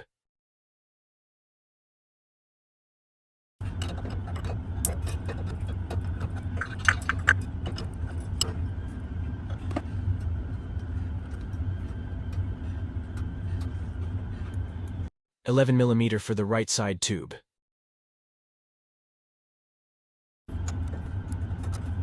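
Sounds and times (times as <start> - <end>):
steady low hum: 3.6 - 15.9, 20.5 - 22.0.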